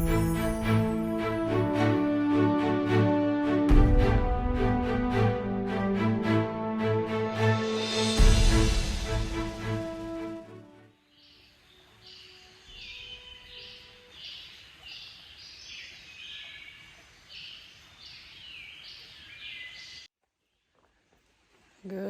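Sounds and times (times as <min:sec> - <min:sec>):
birds singing: 0:11.1 - 0:20.1.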